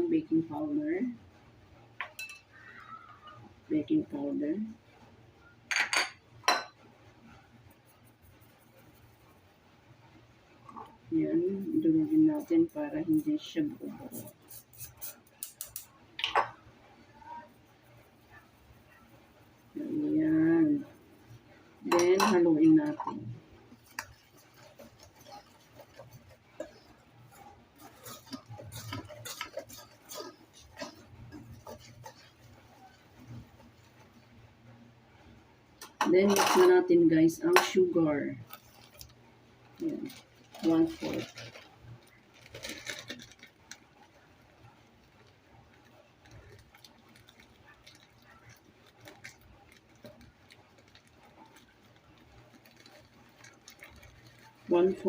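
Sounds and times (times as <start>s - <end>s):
utensil stirring dry flour in bowl: 10.6s - 15.9s, 17.3s - 34.4s, 37.5s - 55.0s
clicks and scrapes against bowl: 23.0s - 34.2s.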